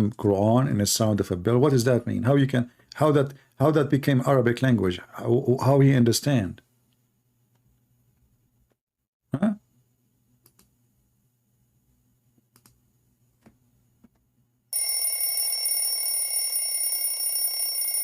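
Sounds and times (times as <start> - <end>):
electric bell ringing: 14.8 - 18.0.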